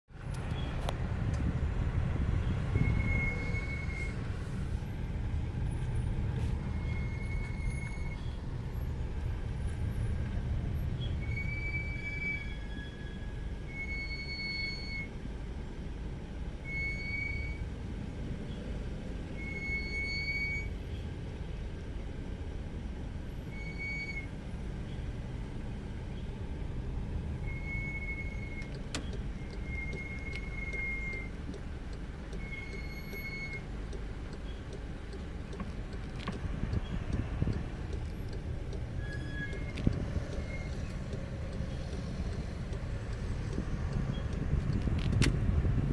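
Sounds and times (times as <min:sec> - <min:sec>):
brake pads squealing: 0:02.4 - 0:15.2, 0:16.6 - 0:17.7, 0:19.3 - 0:21.1, 0:23.3 - 0:25.2, 0:27.3 - 0:45.4
low rumble: 0:35.6 - 0:45.9.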